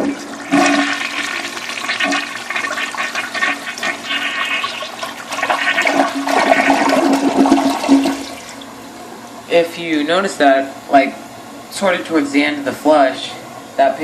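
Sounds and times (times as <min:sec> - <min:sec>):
toilet flushing: 0:00.0 - 0:08.8.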